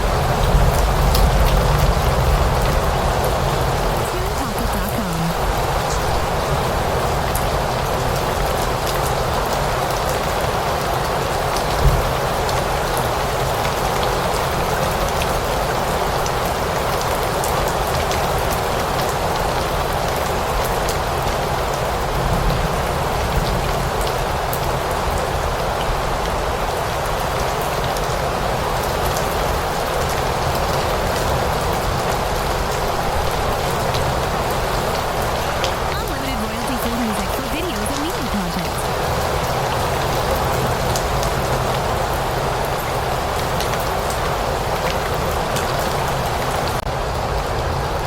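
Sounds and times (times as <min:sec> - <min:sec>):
rain falling: 0:00.0 - 0:48.0.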